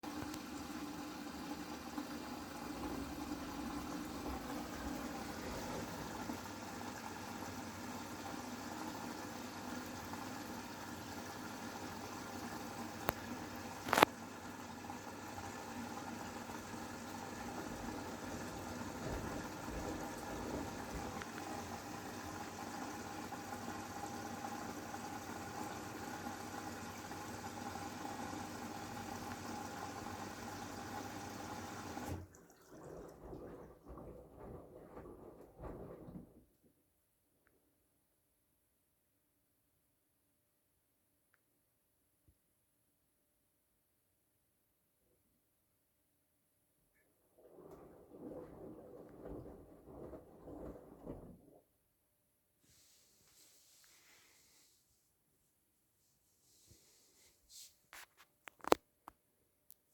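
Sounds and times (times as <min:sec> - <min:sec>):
water hissing into drum: 0:00.0 - 0:36.5, 0:47.4 - 0:51.7
washing machine hum: 0:00.0 - 0:37.0, 0:47.1 - 0:54.8.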